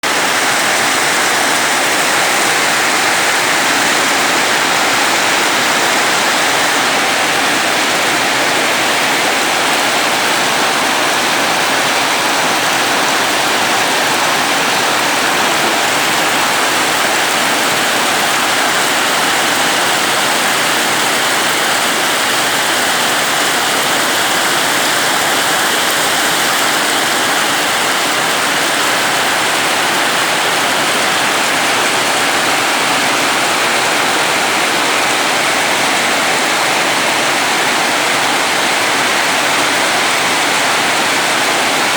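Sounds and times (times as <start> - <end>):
heavy rain pouring: 0.0 - 41.9.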